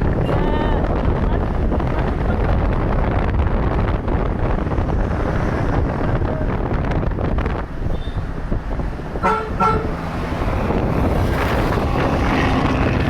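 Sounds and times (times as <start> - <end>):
bus engine rumbling: 0.0 - 13.0
wind buffeting microphone: 0.0 - 13.0.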